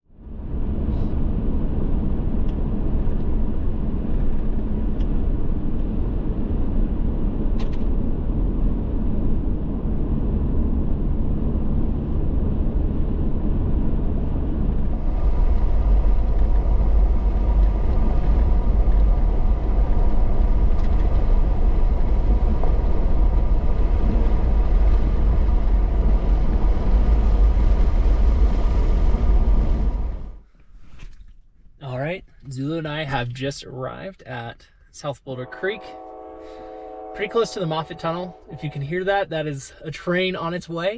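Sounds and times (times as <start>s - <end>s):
road rumble: 0.0s - 40.9s
car engine: 0.2s - 31.1s.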